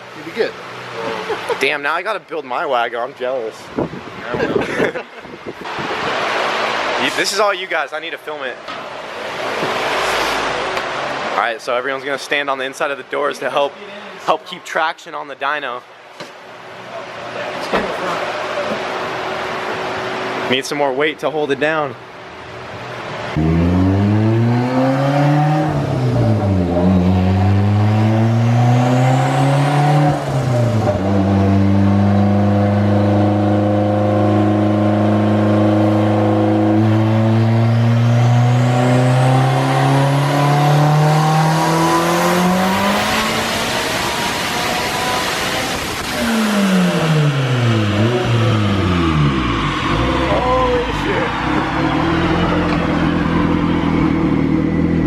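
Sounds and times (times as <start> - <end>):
car engine revving at full throttle: 5.4 - 7.2, 9.0 - 11.4, 22.4 - 55.0.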